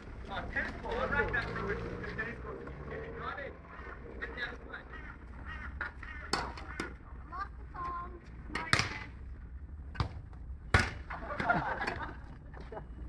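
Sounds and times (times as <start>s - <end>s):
background voices: 0.0s - 5.0s.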